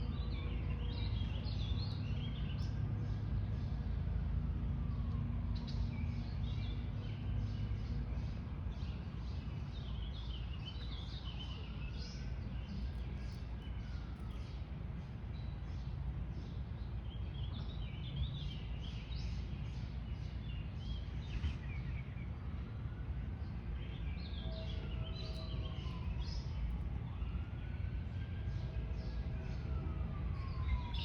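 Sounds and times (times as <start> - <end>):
low outdoor rumble: 0.0 - 31.0
distant siren wailing: 2.7 - 7.7, 22.3 - 31.0.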